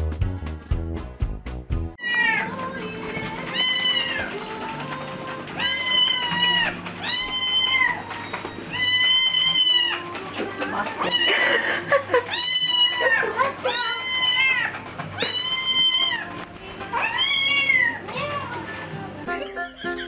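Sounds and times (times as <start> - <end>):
strummed music: 0.0 - 2.0, 19.3 - 20.0.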